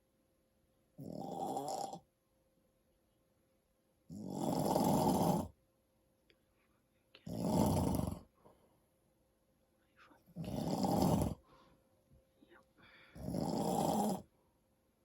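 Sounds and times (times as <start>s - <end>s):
man snoring: 1.0s - 2.0s, 4.1s - 5.5s, 7.3s - 8.2s, 10.4s - 11.4s, 13.1s - 14.3s.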